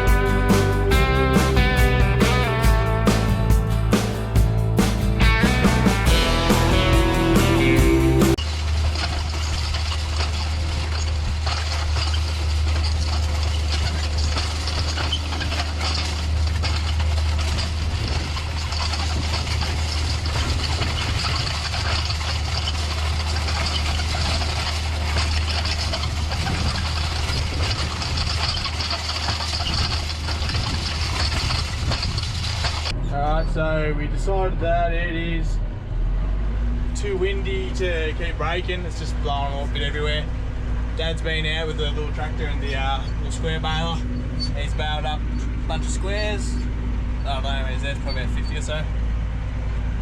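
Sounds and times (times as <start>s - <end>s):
tractor engine running: 0.0s - 50.0s
wind buffeting microphone: 17.1s - 33.0s.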